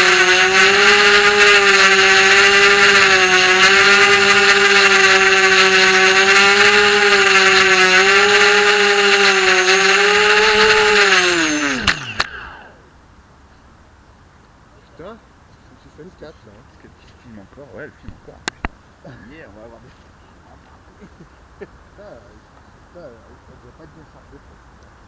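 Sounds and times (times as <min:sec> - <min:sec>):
motors stopping with knocks: 0:00.0 - 0:12.7
quadcopter motors whining: 0:00.0 - 0:12.9.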